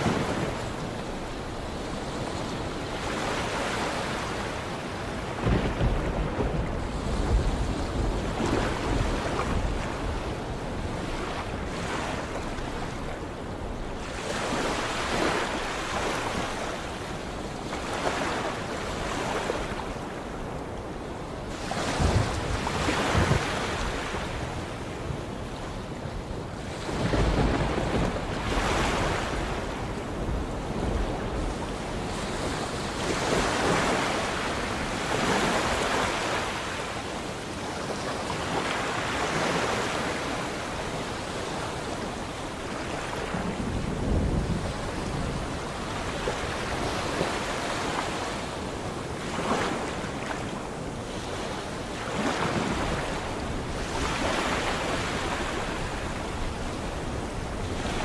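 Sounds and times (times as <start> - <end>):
sea waves breaking: 0.0 - 58.0
wind: 0.0 - 58.0.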